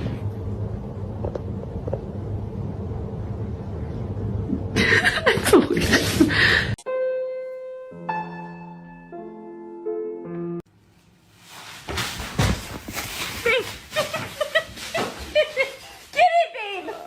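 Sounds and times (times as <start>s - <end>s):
low steady rumble: 0.0s - 6.6s
gentle keyboard music: 6.8s - 10.7s.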